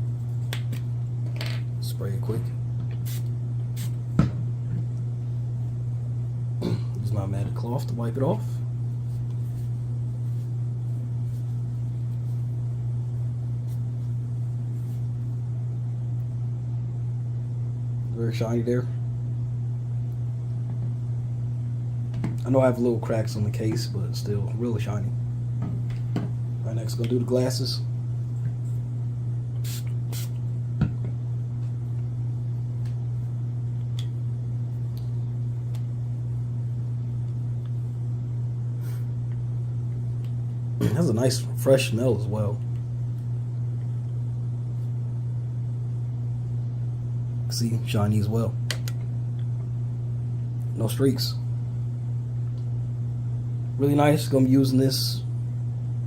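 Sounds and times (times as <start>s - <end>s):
steady low hum: 0.0s - 56.0s
spray bottle hissing: 3.0s - 4.0s, 29.6s - 30.3s.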